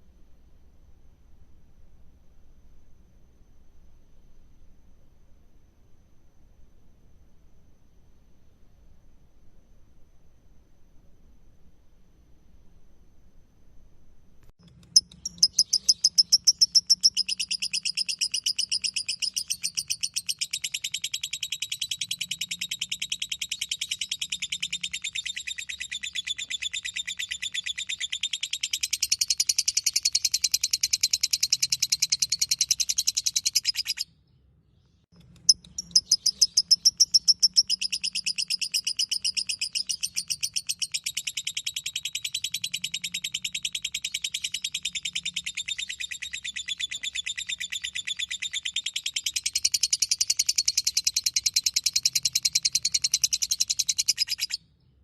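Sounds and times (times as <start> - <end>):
lovebird chattering trill: 14.6 - 34.1, 35.2 - 54.6.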